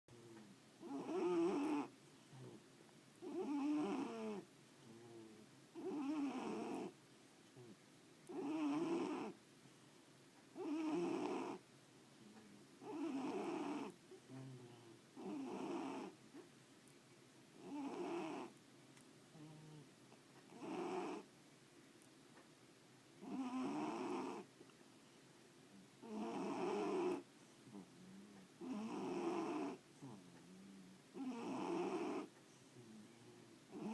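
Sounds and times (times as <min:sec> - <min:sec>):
loud snoring: 0:00.8 - 0:02.6, 0:03.2 - 0:04.4, 0:05.8 - 0:07.0, 0:08.3 - 0:09.4, 0:10.6 - 0:11.6, 0:12.8 - 0:16.2, 0:17.6 - 0:18.5, 0:20.5 - 0:21.3, 0:23.2 - 0:24.5, 0:26.0 - 0:27.8, 0:28.6 - 0:32.3
faint breaths: 0:11.2 - 0:15.5.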